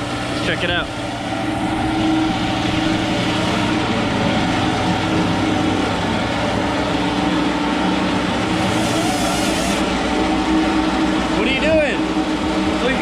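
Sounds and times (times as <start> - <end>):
grinder whining: 0.0 - 5.8, 8.3 - 10.6
air compressor pulsing: 0.0 - 13.0.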